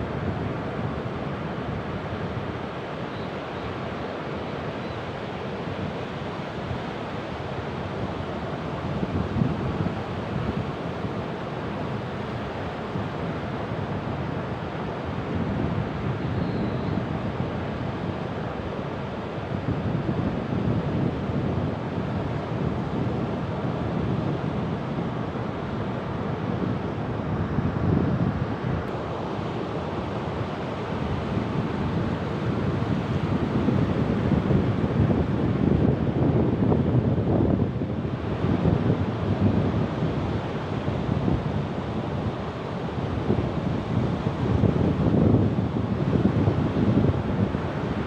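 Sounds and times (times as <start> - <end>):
wind rumbling on microphone: 31.0 - 48.0.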